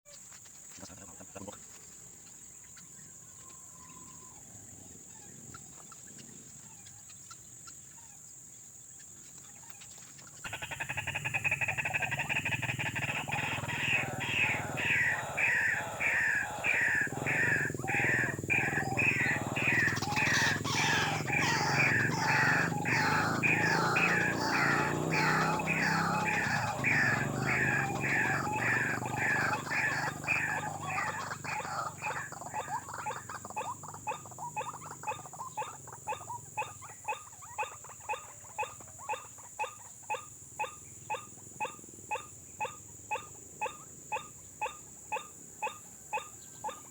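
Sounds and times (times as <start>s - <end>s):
waterhen harsh call: 10.5s - 33.3s.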